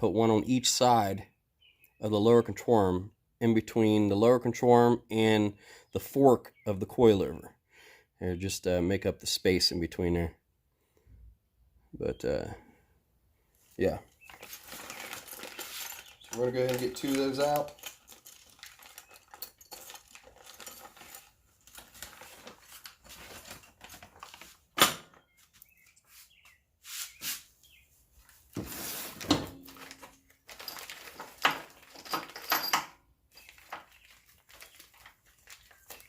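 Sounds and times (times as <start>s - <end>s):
metal parts clinking and knocking: 14.3s - 23.0s, 29.5s - 35.1s.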